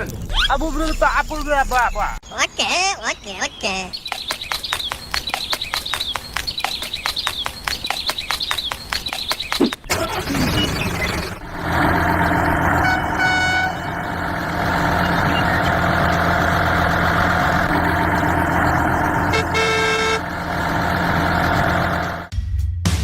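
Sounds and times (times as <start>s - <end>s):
vehicle engine running: 9.9s - 22.3s
horn tooting: 11.5s - 16.0s, 17.6s - 22.3s.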